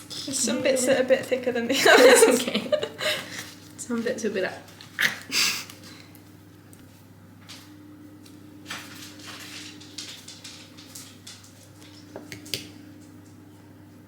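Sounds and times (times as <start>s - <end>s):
soft kitchen scrapes and rustles: 6.8s - 12.4s.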